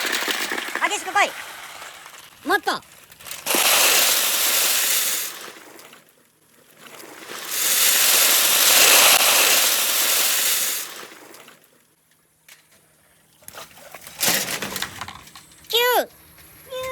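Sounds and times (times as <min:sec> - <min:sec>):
marbles rolling on wood: 0:00.0 - 0:05.5, 0:07.4 - 0:11.1, 0:14.3 - 0:15.8
water rushing down gutter: 0:00.0 - 0:12.0.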